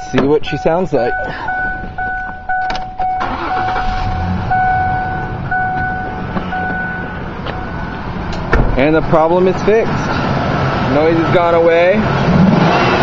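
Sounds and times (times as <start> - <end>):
warning chime beeping: 0.0 - 8.0
engine cranking and idling: 1.2 - 10.1.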